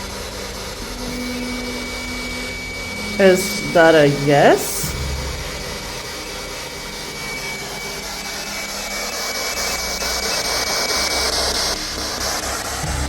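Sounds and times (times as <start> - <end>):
faint high tone: 1.0 - 5.0.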